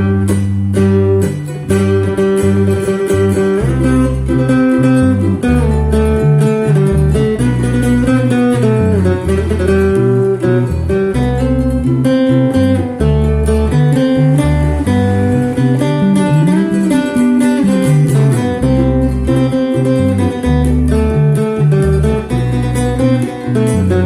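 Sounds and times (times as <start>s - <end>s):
deep bass line: 0.0s - 24.0s
plucked guitar music: 0.0s - 24.0s.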